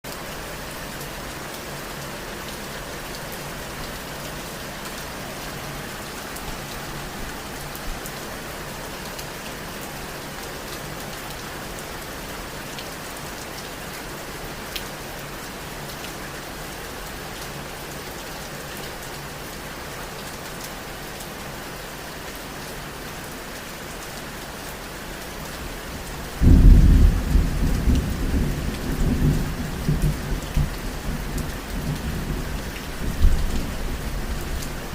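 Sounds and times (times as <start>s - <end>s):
steady rain falling: 0.0s - 34.9s
low rumble of thunder: 26.4s - 34.6s.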